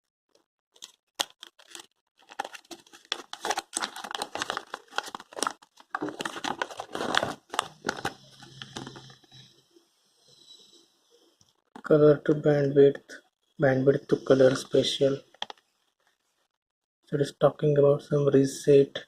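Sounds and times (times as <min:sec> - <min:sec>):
paper crinkling and rustling: 0:00.7 - 0:09.3.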